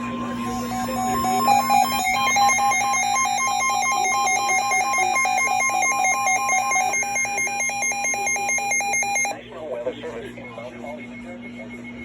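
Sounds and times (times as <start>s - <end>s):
warbling electronic alarm tone: 0.0s - 9.3s.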